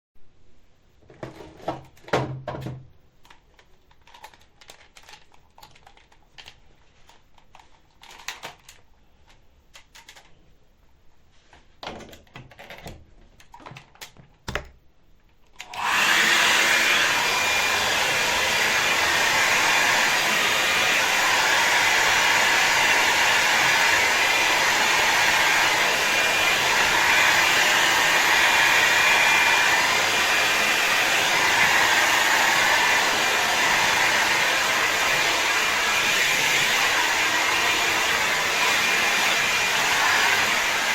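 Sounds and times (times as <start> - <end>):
hair dryer blowing: 15.6 - 40.9.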